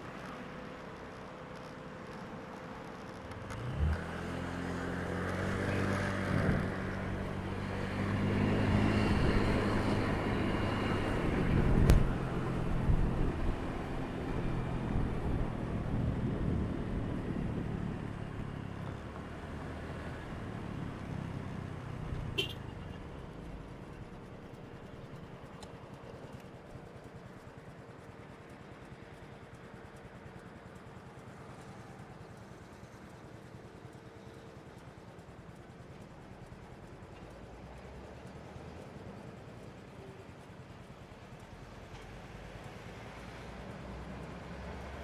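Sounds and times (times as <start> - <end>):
vehicle engine passing: 3.2 - 25.4.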